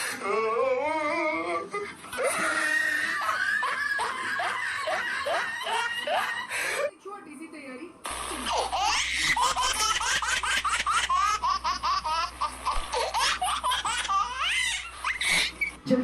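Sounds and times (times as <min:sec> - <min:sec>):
high-pitched laughter: 0:02.1 - 0:06.5
steady low hum: 0:07.9 - 0:16.0.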